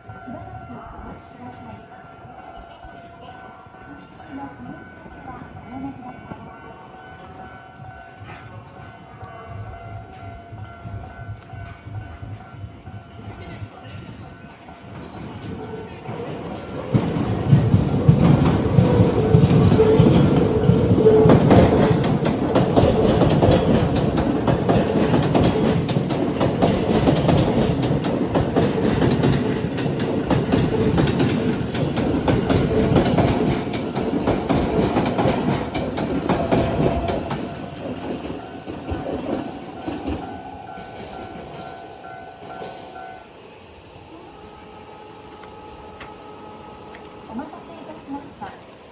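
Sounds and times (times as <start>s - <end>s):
wheels rumbling on rail: 0.0s - 48.9s
clacking over rail joints: 13.2s - 41.7s.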